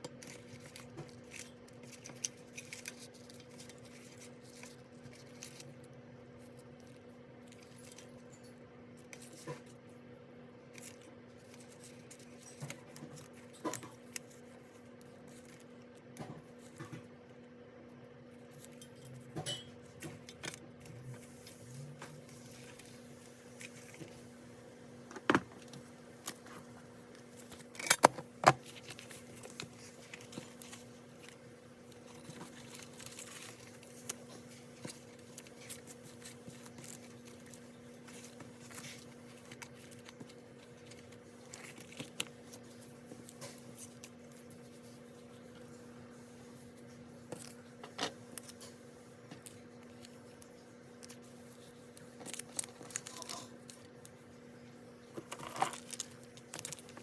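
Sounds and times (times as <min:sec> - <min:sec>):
low electrical hum: 0:00.0 - 0:57.0
hands handling planner and stationery: 0:25.2 - 0:45.8.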